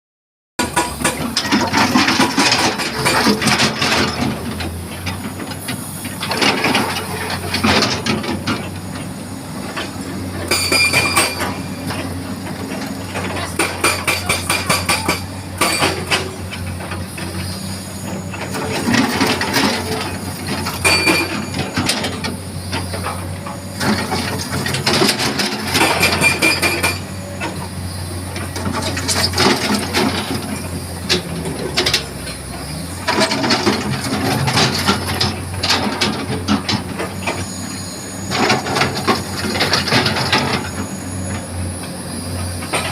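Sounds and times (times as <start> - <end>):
diesel engine running: 0.6 - 42.9.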